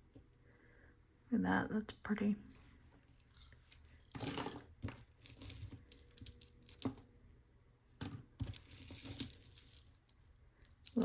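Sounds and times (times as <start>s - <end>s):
metal jewelry clinking and jingling: 2.4s - 7.0s, 8.0s - 11.0s.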